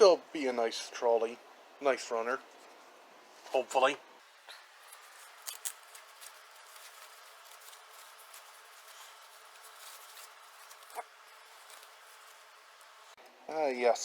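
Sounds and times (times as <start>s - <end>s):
plastic pieces and wrapping rustling: 4.2s - 13.2s.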